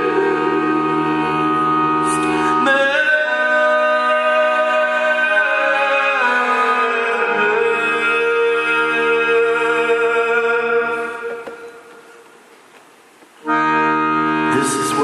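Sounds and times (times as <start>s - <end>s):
live instrumental chords: 0.0s - 4.8s, 13.4s - 15.0s.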